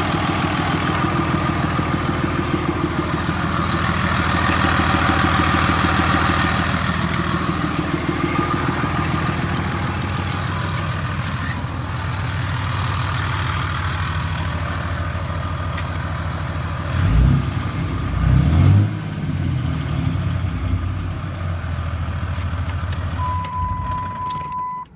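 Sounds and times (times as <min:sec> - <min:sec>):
low rumbles: 0:00.0 - 0:24.6
diesel engine idling: 0:00.0 - 0:24.8
steady beep: 0:23.2 - 0:24.9.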